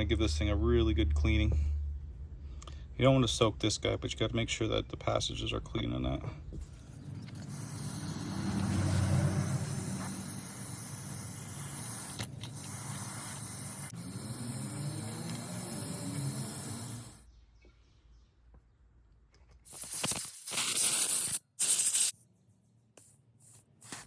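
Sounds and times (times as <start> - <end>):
aerosol spray hissing: 7.3 - 17.2, 19.7 - 22.2.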